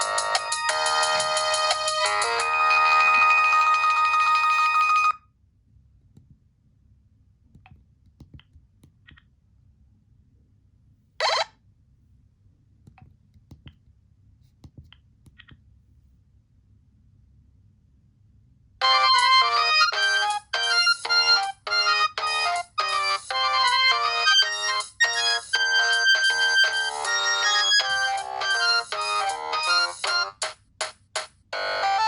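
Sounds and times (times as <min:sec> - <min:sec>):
polyphonic phone ringtone: 0:00.0 - 0:05.2, 0:11.2 - 0:11.5, 0:18.8 - 0:30.4, 0:31.6 - 0:32.0.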